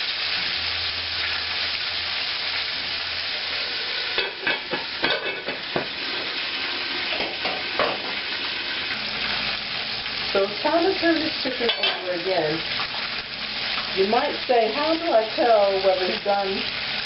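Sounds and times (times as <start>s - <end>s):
oil crackling and popping: 0.0s - 14.4s
chicken sizzling in hot oil: 0.0s - 17.0s.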